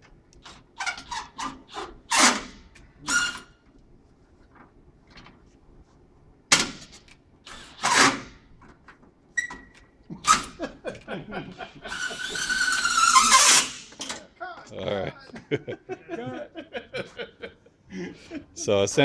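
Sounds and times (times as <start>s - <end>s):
power driver whining: 11.9s - 14.2s.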